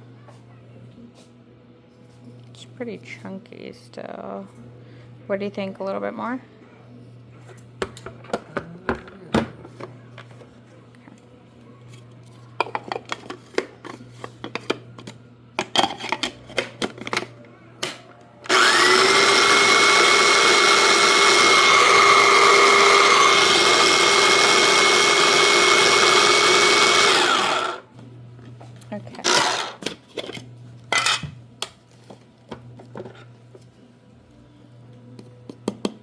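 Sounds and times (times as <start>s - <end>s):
blender motor whining: 18.5s - 27.9s, 29.2s - 29.8s.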